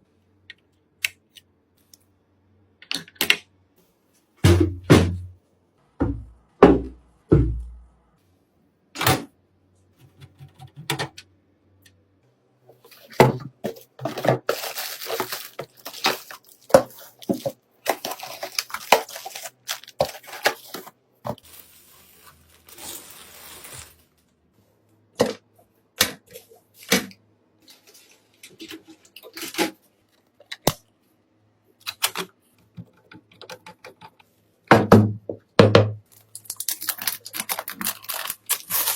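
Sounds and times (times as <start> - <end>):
packaging rustling: 12.9 - 24.0, 36.1 - 38.9.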